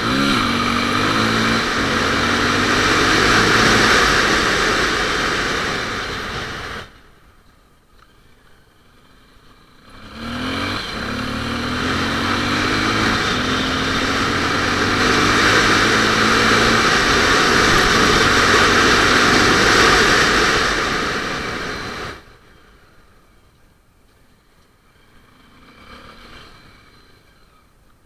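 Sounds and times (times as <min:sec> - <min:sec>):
motorcycle engine accelerating: 0:00.0 - 0:07.2, 0:08.0 - 0:22.6
wind rushing over microphone: 0:10.4 - 0:22.3.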